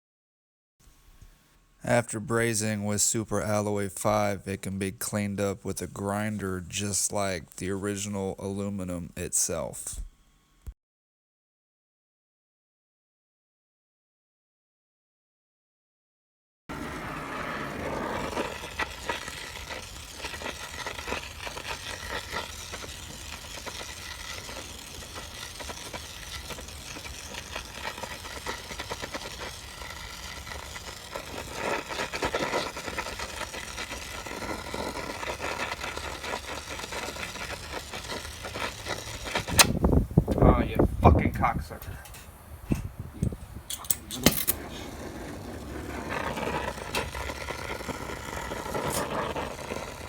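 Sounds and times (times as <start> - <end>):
gas torch burning: 0.8 - 10.8, 16.7 - 50.0.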